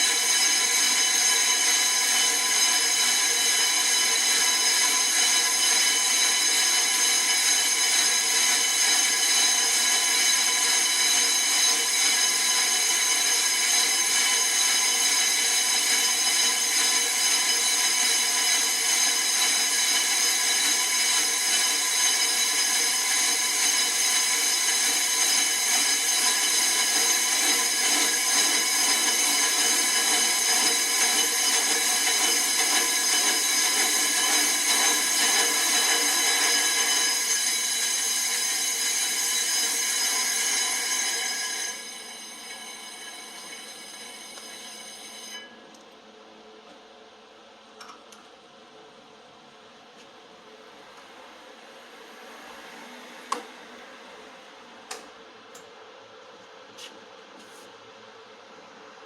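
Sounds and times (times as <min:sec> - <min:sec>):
lathe high-pitched metallic squeal: 0:00.0 - 0:45.6, 0:50.8 - 0:55.0.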